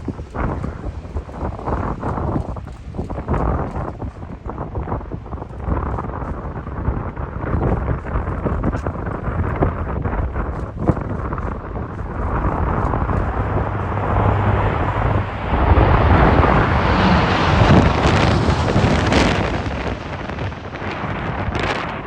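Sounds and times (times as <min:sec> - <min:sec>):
wind buffeting microphone: 0:00.0 - 0:22.0
jet aircraft flying past: 0:11.5 - 0:22.0.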